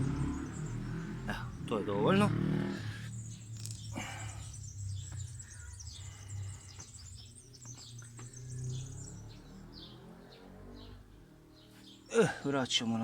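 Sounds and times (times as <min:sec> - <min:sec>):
steady low hum: 0:00.0 - 0:09.1
small birds chirping: 0:00.0 - 0:13.0.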